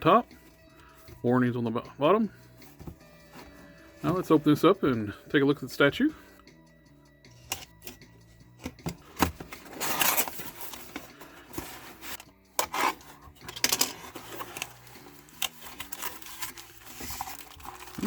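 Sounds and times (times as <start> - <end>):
cardboard rubbing and scraping: 9.4 - 13.3, 15.6 - 18.0.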